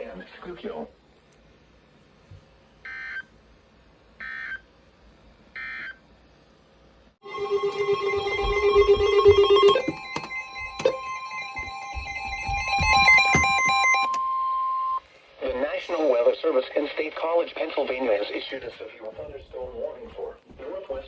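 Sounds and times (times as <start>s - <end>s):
loud music: 7.2s - 13.8s.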